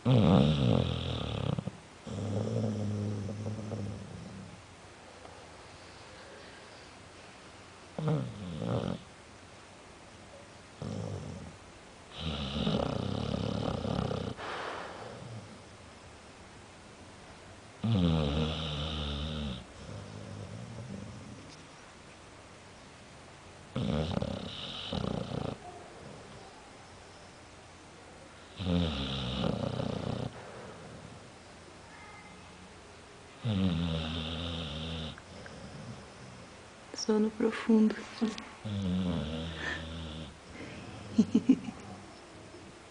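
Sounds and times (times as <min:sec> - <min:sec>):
pet snoring: 0:00.0 - 0:04.6, 0:08.0 - 0:09.1, 0:10.8 - 0:15.6, 0:17.8 - 0:21.5, 0:23.7 - 0:26.3, 0:28.4 - 0:31.3, 0:33.4 - 0:36.5, 0:38.6 - 0:40.4.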